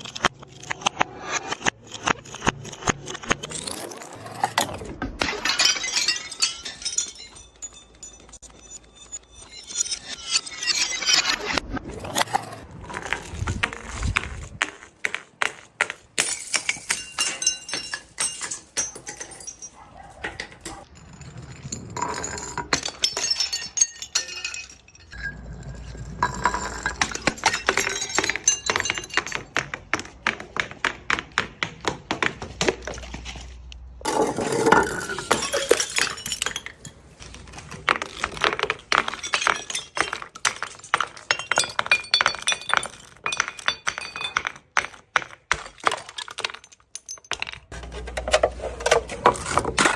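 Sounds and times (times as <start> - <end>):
glass bottles smashing: 3.3 - 14.5, 16.0 - 30.2, 34.0 - 49.9
glass shards tinkling: 5.2 - 11.6, 16.2 - 25.4, 26.2 - 29.6, 34.1 - 45.0, 45.6 - 49.9.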